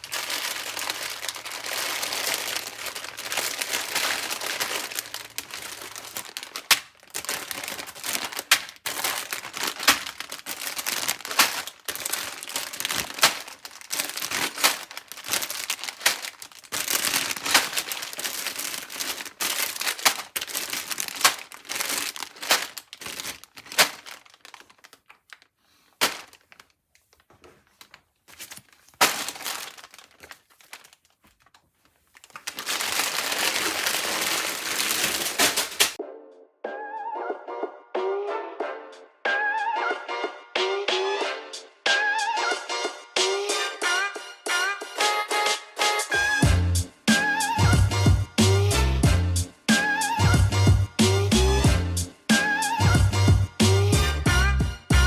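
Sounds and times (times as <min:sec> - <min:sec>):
plastic pieces clicking and clattering: 0:00.0 - 0:31.6, 0:32.2 - 0:36.0
plastic bags crinkling: 0:00.0 - 0:36.0, 0:47.1 - 0:48.9, 0:49.7 - 0:51.2, 0:52.3 - 0:55.0.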